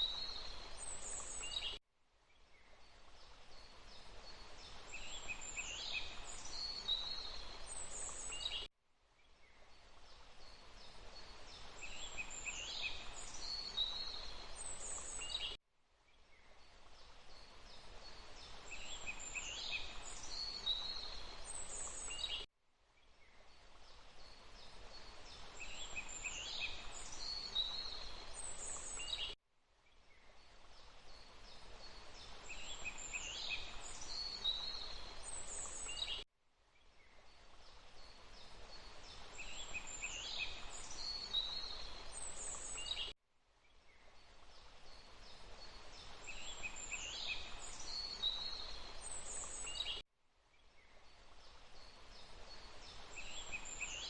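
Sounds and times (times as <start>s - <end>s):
songbirds chirping and whistling: 24.9s - 29.4s, 31.5s - 36.2s, 38.9s - 43.1s, 45.5s - 50.0s, 52.4s - 54.0s.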